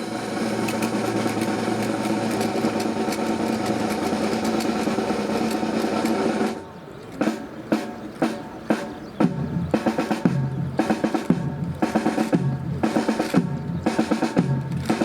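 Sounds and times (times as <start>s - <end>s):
snare drum roll: 0.0s - 15.0s
sharp drum strikes: 0.1s - 15.0s.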